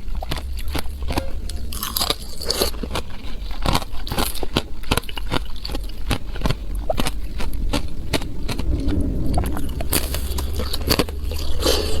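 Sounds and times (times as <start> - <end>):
ice being chewed: 0.0 - 12.0
low rumble: 0.0 - 12.0.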